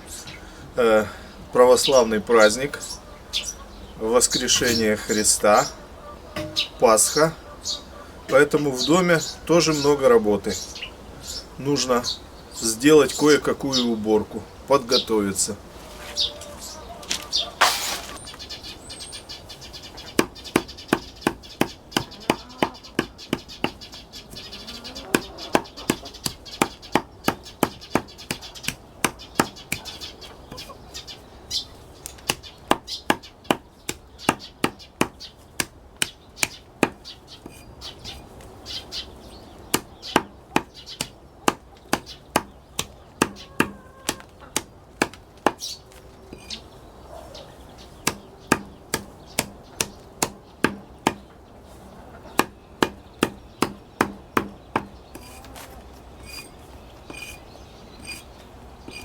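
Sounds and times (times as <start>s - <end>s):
faint bird chirps: 0.0s - 14.0s, 16.0s - 35.4s, 36.0s - 44.6s, 45.6s - 59.0s
sharp knocks: 6.4s - 7.0s, 25.2s - 29.8s, 43.2s - 45.6s, 48.0s - 51.3s, 52.4s - 55.4s.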